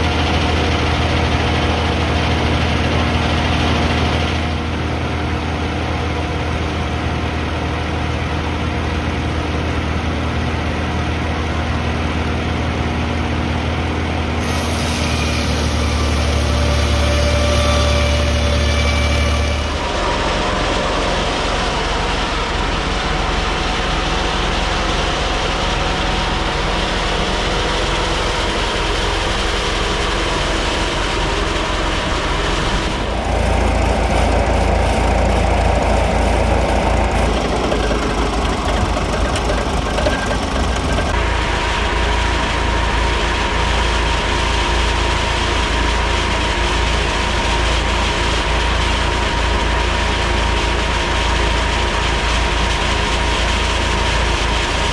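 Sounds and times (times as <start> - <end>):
tractor engine running: 32.0 - 41.2.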